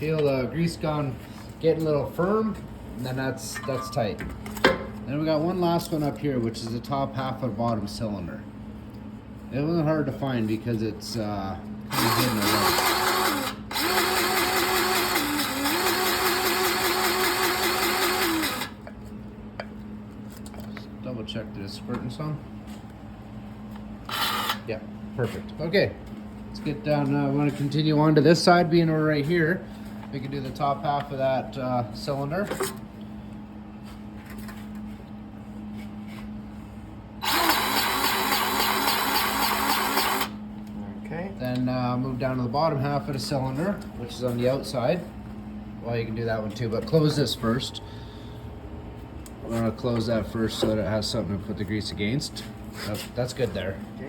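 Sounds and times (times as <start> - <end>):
power grease gun motor whining: 11.9 - 18.8, 37.2 - 40.4.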